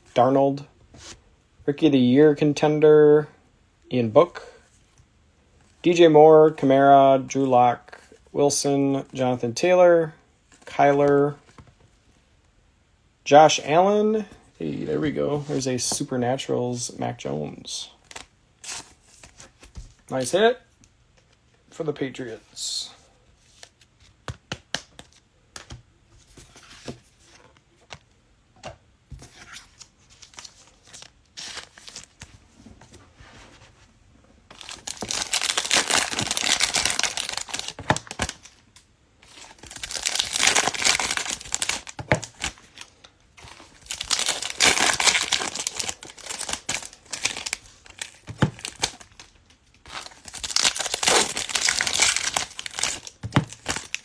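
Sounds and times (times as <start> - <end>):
plastic wrappers crinkling: 34.5 - 54.0.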